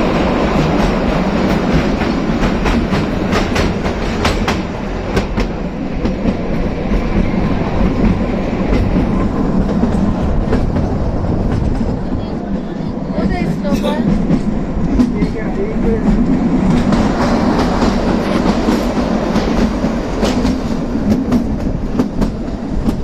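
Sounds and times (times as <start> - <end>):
train rumbling: 0.0 - 23.0.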